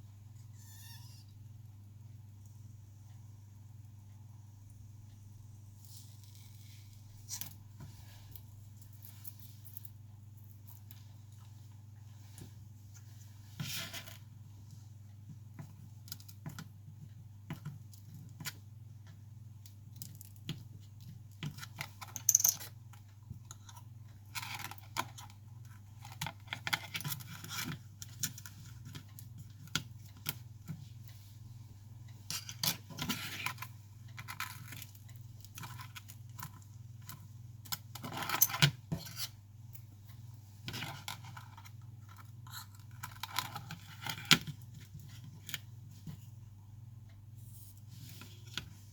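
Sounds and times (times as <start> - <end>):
low electrical hum: 0.0 - 48.9
small tools clicking and tapping: 19.9 - 25.3.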